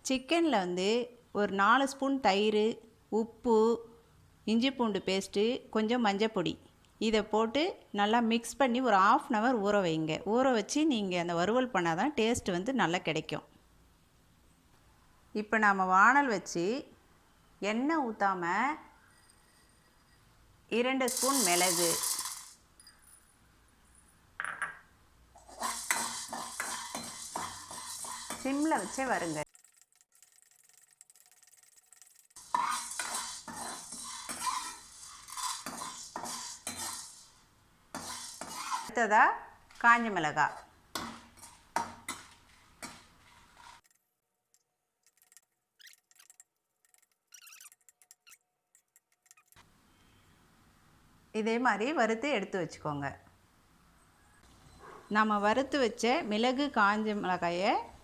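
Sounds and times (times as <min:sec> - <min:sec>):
metal spoon scraping metal pan: 0:21.0 - 0:22.6, 0:25.4 - 0:39.0, 0:40.5 - 0:43.9
peppercorns stirred in pan: 0:21.0 - 0:22.7, 0:25.4 - 0:39.0, 0:40.5 - 0:44.0
faint high squeaks: 0:45.8 - 0:46.4, 0:47.3 - 0:48.5, 0:49.2 - 0:49.6.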